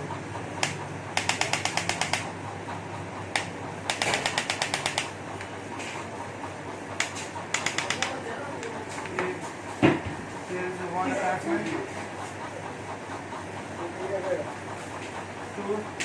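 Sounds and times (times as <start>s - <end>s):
adjusting gun rapid clicking: 0.6s - 2.3s, 3.4s - 5.1s, 7.0s - 8.2s.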